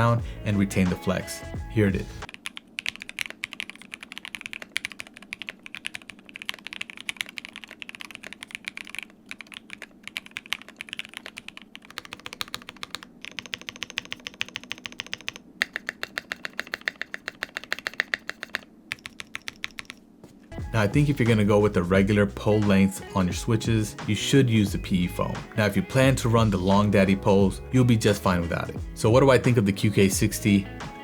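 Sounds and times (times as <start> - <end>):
mechanical keyboard typing: 2.3 - 20.0.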